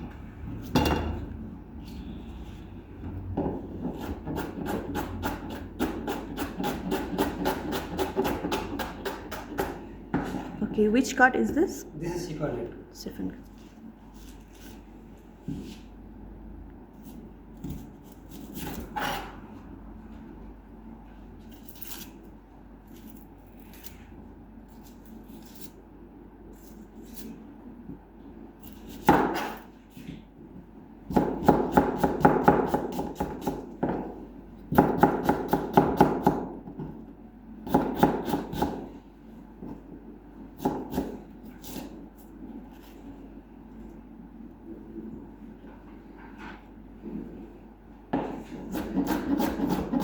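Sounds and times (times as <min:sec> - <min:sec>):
knife chopping on cutting board: 0:03.4 - 0:10.5, 0:28.9 - 0:29.6, 0:31.1 - 0:34.1, 0:34.7 - 0:36.8, 0:37.6 - 0:38.9, 0:40.6 - 0:42.0, 0:48.1 - 0:50.0.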